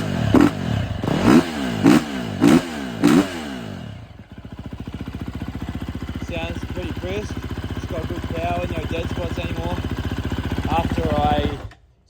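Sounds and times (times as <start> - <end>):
dirt bike engine revving and idling: 0.0 - 12.0.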